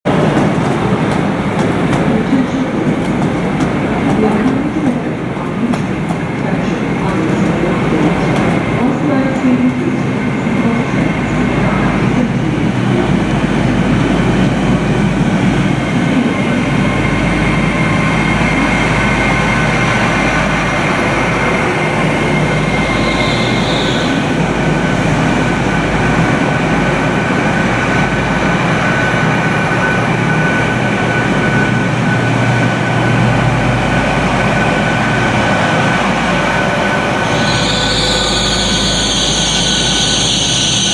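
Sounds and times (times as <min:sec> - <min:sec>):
train rumbling: 0:00.0 - 0:40.9
high wheel squeal: 0:21.6 - 0:25.2, 0:35.5 - 0:40.9.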